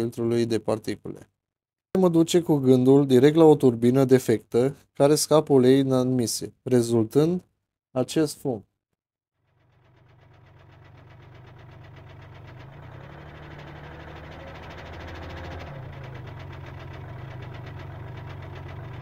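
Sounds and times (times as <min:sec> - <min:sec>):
diesel engine knocking: 0:09.4 - 0:19.0.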